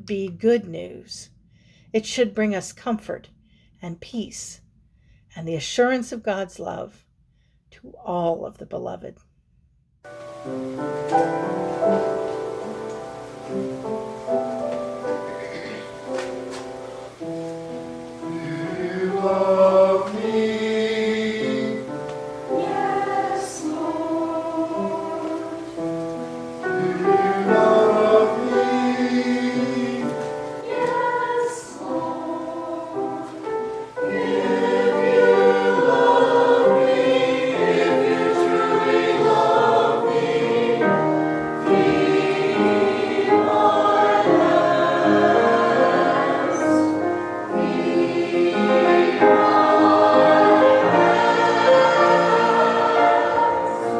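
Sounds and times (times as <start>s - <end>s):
choir singing a hymn: 10.1s - 53.9s.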